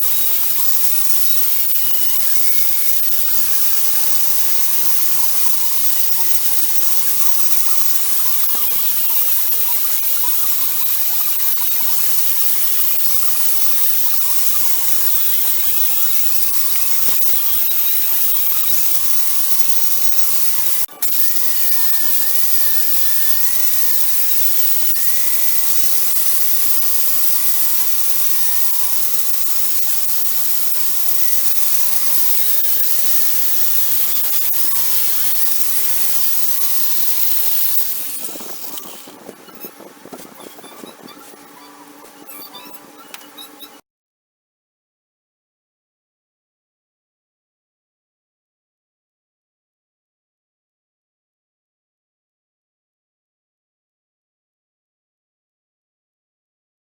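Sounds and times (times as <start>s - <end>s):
power tool motor whining: 0.0s - 43.8s.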